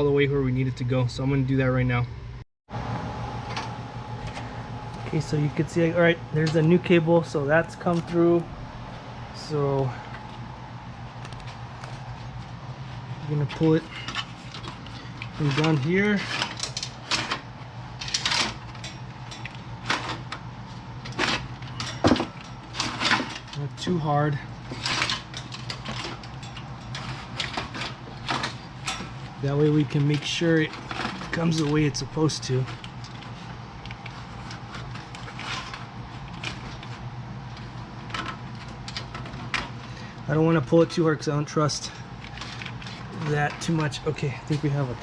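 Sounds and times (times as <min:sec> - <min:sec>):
faint steady hum: 0:00.0 - 0:45.0
cable rubbing and scraping: 0:04.2 - 0:18.6, 0:24.6 - 0:39.3.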